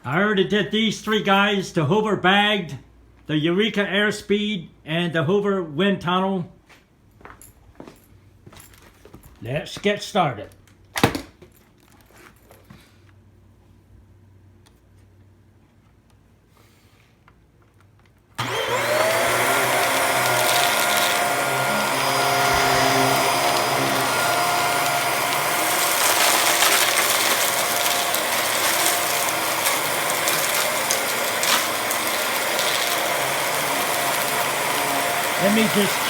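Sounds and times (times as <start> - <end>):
vacuum cleaner motor whine: 18.4 - 36.0.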